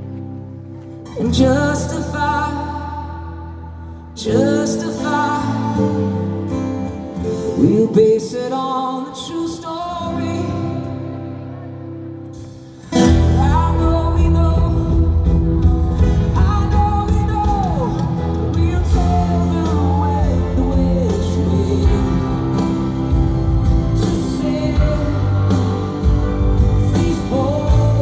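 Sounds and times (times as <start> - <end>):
person singing: 1.1 - 28.0
pop-rock band playing: 12.3 - 28.0.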